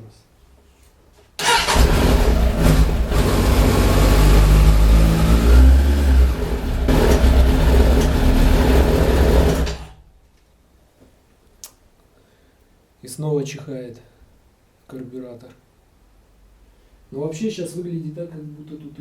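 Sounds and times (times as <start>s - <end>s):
motorcycle engine running unevenly: 1.8s - 9.9s.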